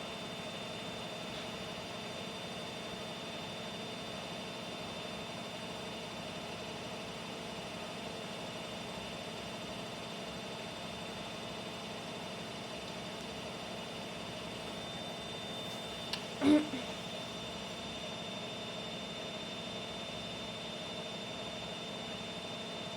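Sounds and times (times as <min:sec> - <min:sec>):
washing machine humming: 0:11.2 - 0:22.9.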